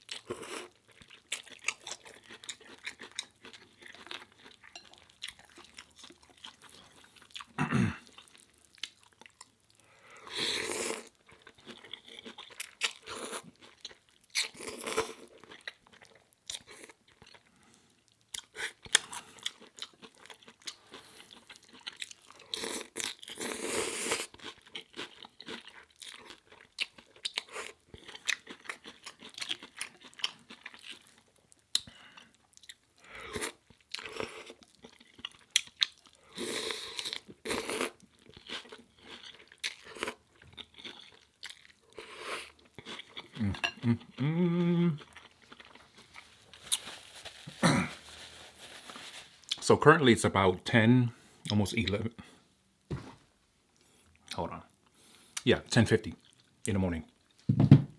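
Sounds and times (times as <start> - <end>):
crisps being crunched: 45.4 - 49.7.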